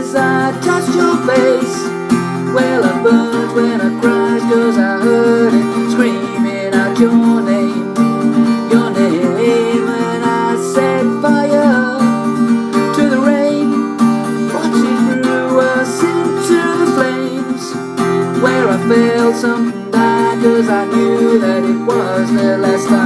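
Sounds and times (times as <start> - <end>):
acoustic guitar strumming: 0.0 - 23.0.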